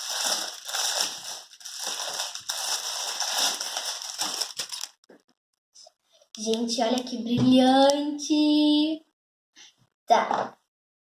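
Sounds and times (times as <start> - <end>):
plastic packaging crinkling: 0.0 - 5.1.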